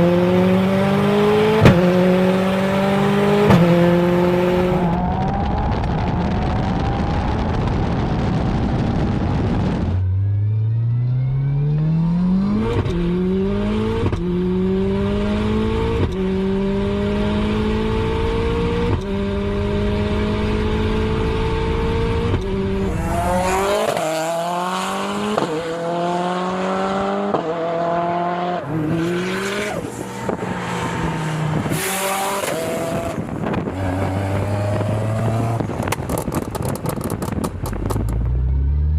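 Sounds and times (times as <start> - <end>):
engine revving: 0.0 - 5.3, 9.9 - 38.9
car engine accelerating hard: 0.0 - 38.9
exhaust pops: 32.4 - 38.4.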